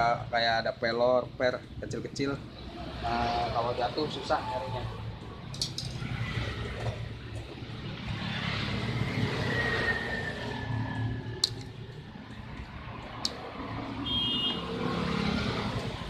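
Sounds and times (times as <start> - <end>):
low traffic rumble: 0.0 - 16.0
vehicle passing by: 2.7 - 14.0, 14.6 - 16.0.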